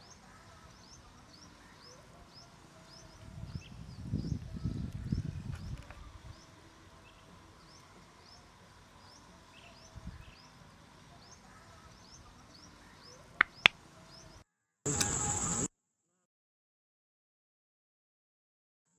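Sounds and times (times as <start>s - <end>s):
bird chirping: 12.1s - 15.7s
sharp clicks: 14.9s - 15.7s.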